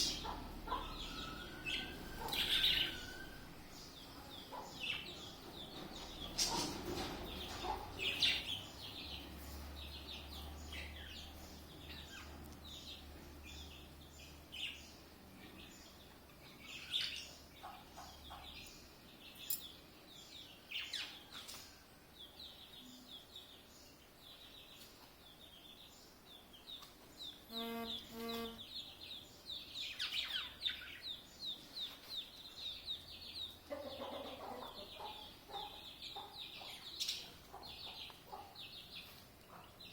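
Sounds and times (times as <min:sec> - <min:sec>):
lower-pitched bird calls: 0:00.0 - 0:03.6
small birds chirping: 0:00.0 - 0:39.9.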